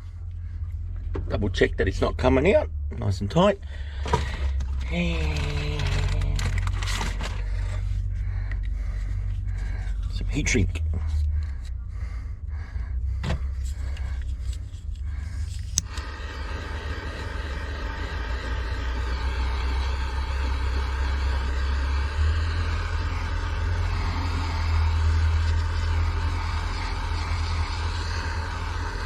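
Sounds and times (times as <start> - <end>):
low rumble: 0.0 - 29.0
heat gun blowing: 15.4 - 29.0.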